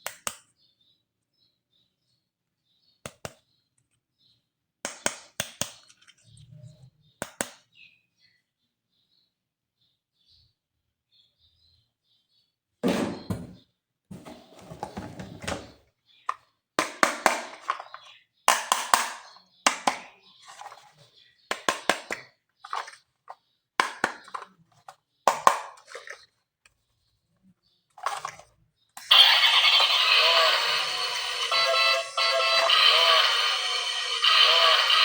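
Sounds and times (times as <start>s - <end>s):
plastic toys clicking and tapping: 4.8s - 6.3s, 16.3s - 20.9s, 21.5s - 26.3s
music: 29.1s - 35.0s.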